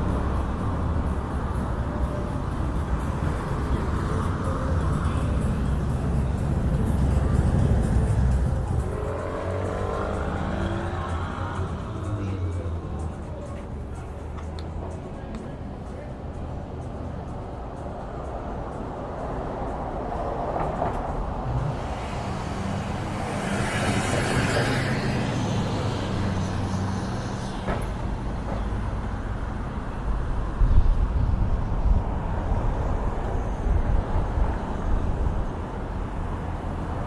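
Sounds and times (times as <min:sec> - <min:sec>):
large vehicle engine running: 0:00.0 - 0:17.9, 0:21.0 - 0:37.0
street traffic: 0:00.0 - 0:37.0.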